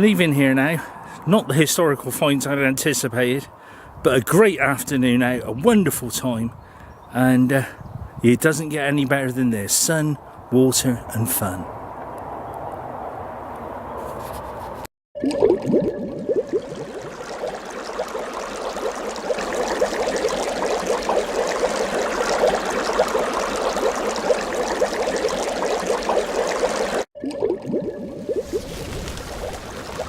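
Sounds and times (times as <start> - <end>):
brook water flowing: 15.7 - 27.1, 27.8 - 30.0.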